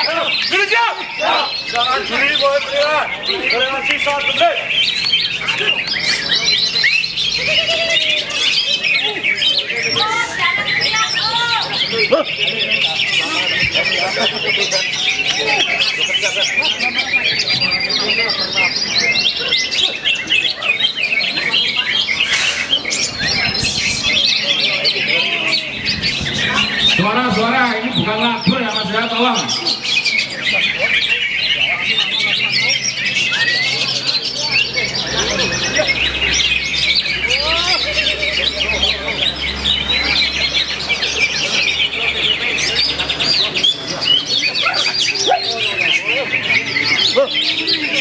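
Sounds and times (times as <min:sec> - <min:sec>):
harsh raspy bird calls: 0:00.0 - 0:48.0
songbirds chorus: 0:00.0 - 0:48.0.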